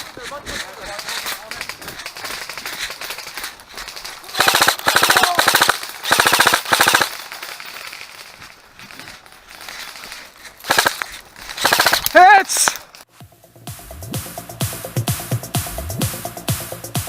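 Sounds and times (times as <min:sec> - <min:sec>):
airsoft rifle firing bursts: 0:00.0 - 0:08.4, 0:09.5 - 0:12.8.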